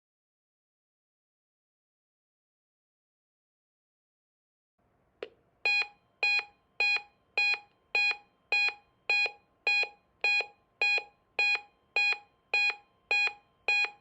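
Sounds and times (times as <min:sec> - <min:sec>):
click: 0:05.2 - 0:05.9
faint steady alarm tone: 0:05.6 - 0:14.0
loud alarm beeps: 0:05.7 - 0:14.0.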